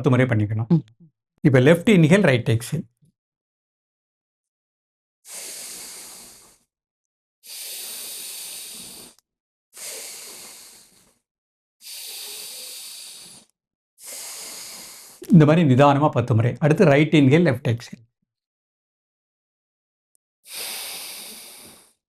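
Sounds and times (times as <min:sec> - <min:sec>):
slow breathing through nostril: 0:05.3 - 0:06.7, 0:07.5 - 0:09.2, 0:09.8 - 0:11.2, 0:11.8 - 0:15.3, 0:20.5 - 0:22.0.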